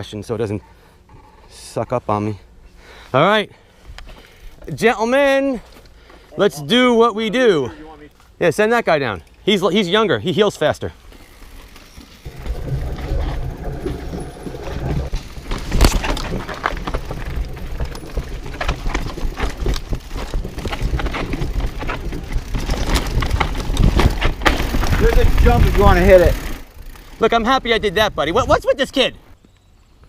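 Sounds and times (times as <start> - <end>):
bike clattering over rocks: 11.4 - 27.2
low rumble: 12.2 - 26.3.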